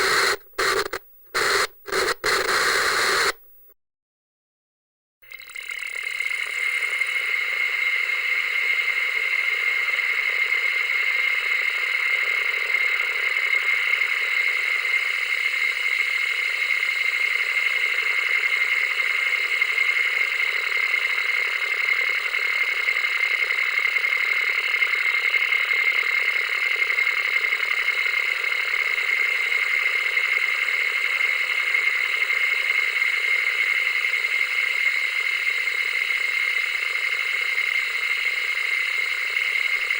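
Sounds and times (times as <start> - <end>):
television static hiss: 0.0 - 3.4.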